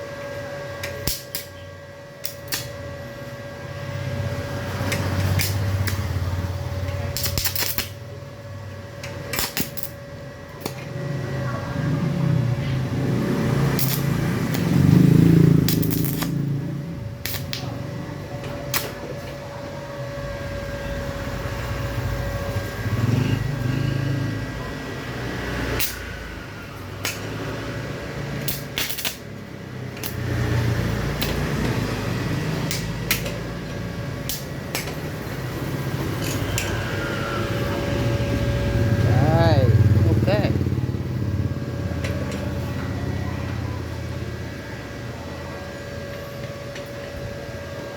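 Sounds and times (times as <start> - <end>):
welder machine hum: 0.0 - 47.9
welding arc clicks and crackles: 0.7 - 2.9, 4.4 - 8.2, 9.0 - 10.9, 13.2 - 19.4, 25.5 - 37.0.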